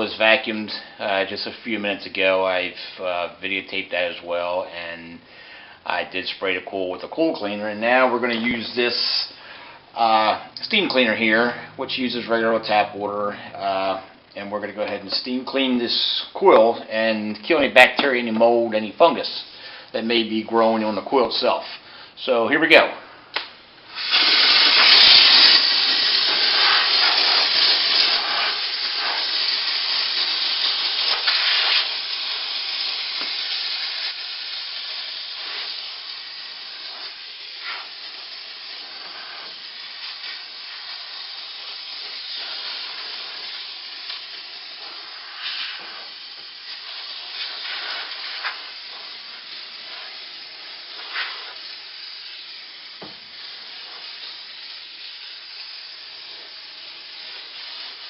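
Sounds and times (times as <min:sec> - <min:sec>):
steam cleaner hissing: 0:23.9 - 0:58.0.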